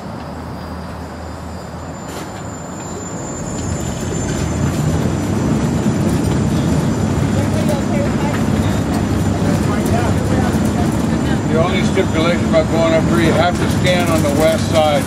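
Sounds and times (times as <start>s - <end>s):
construction elevator rumbling: 1.2s - 15.0s.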